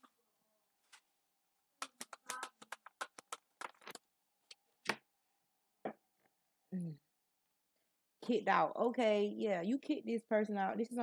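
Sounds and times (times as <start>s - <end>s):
cards being shuffled: 1.8s - 5.0s.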